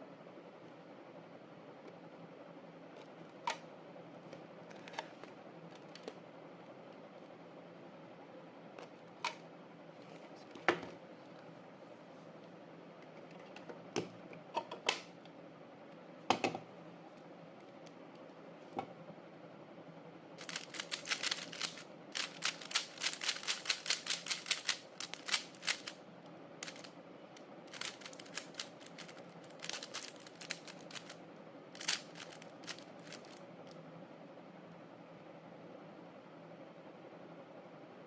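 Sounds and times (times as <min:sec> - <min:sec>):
speed cube layers clicking: 0:20.4 - 0:26.0, 0:26.6 - 0:26.9, 0:27.7 - 0:31.2, 0:31.8 - 0:33.4.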